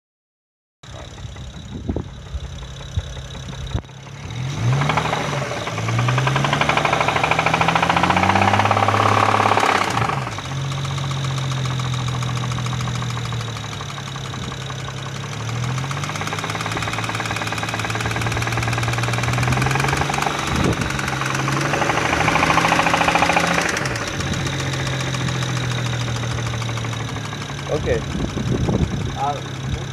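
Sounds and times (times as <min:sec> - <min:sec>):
car engine revving with a knock: 0:04.7 - 0:10.4, 0:16.1 - 0:24.2.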